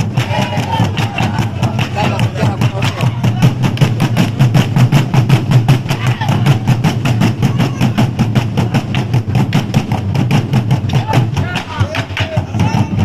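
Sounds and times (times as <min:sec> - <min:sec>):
drum ensemble fast rhythm: 0:00.0 - 0:13.0.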